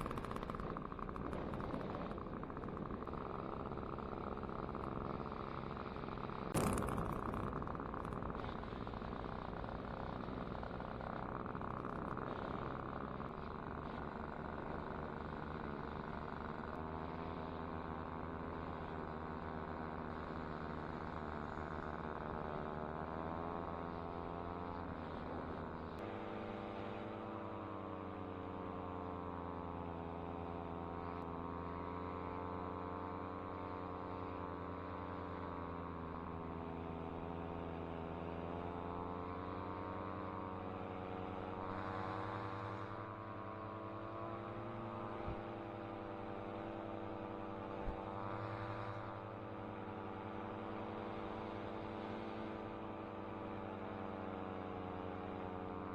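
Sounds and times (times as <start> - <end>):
paramotor engine and propeller: 0.0 - 55.9.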